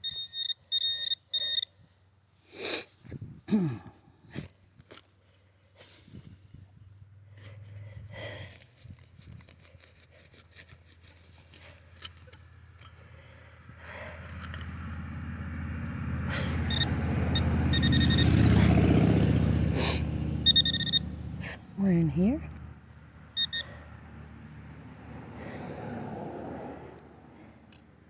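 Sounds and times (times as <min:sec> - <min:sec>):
metal detector beeps: 0:00.0 - 0:01.9, 0:16.3 - 0:18.4, 0:20.4 - 0:21.2, 0:23.3 - 0:23.8
soil and stones scraping: 0:07.4 - 0:12.6
vehicle passing: 0:11.0 - 0:28.0.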